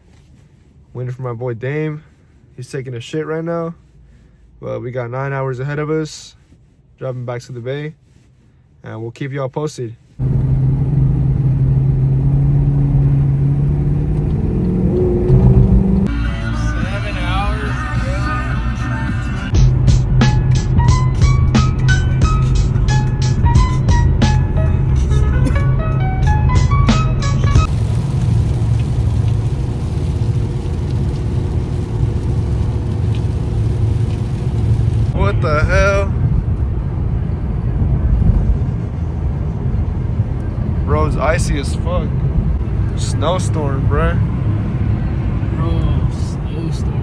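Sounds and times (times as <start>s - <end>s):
car engine accelerating: 10.2s - 16.2s, 19.5s - 47.0s
music: 16.1s - 27.7s
tyre and wind hiss: 27.6s - 36.1s.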